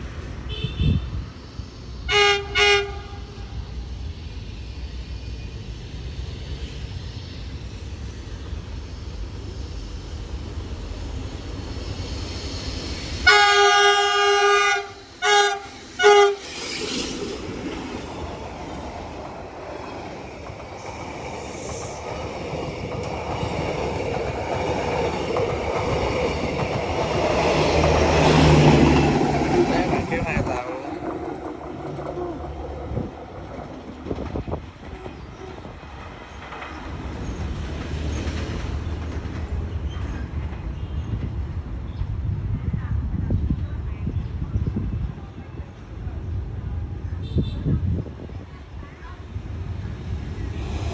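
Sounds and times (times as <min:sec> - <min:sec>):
locomotive engine and wheel noise: 0:00.0 - 0:50.9
train horn blasts: 0:02.1 - 0:03.4, 0:13.2 - 0:16.5.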